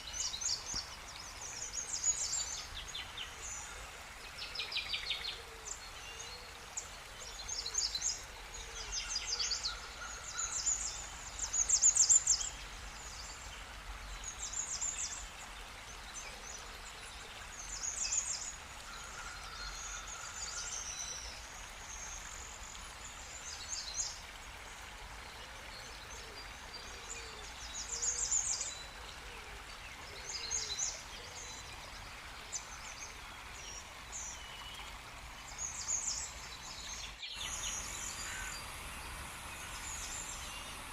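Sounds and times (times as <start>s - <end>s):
steady background hiss: 0.0s - 40.9s
small birds chirping: 35.5s - 40.9s.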